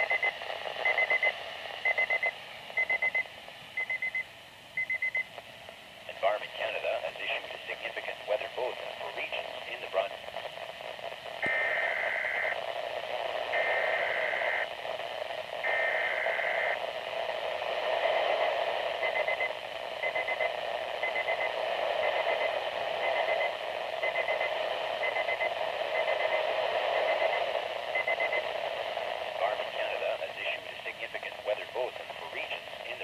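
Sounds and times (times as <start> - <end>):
radio hiss: 0.0 - 3.6, 5.3 - 33.0.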